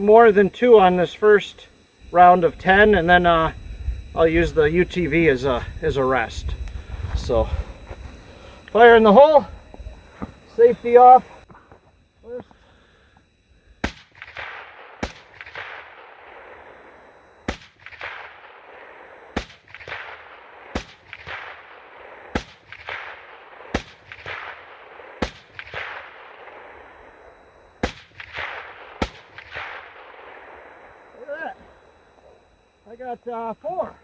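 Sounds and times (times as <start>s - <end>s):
rifle shots with echo: 13.8s - 31.0s.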